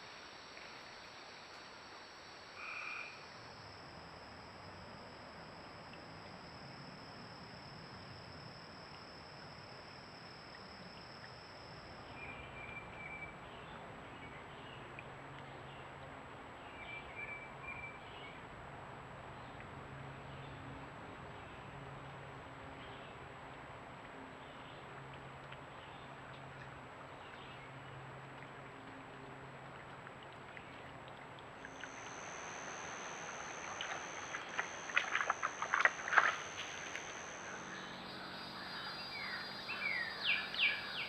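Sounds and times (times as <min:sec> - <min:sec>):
steady hiss: 0:00.0 - 0:12.0, 0:31.7 - 0:41.0
frogs trilling: 0:00.0 - 0:13.4, 0:31.6 - 0:41.0
high steady whine: 0:00.0 - 0:13.4, 0:31.6 - 0:41.0
faint low frog calls: 0:00.0 - 0:15.8, 0:24.6 - 0:41.0.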